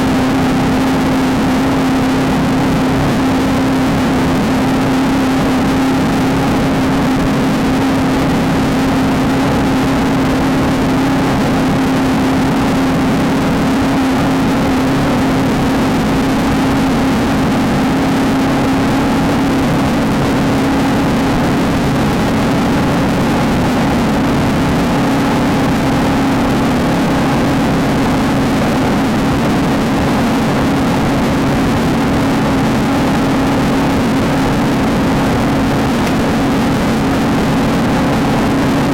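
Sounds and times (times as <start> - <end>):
constant rushing noise: 0.0 - 38.9
race car engine running hard: 0.0 - 38.9.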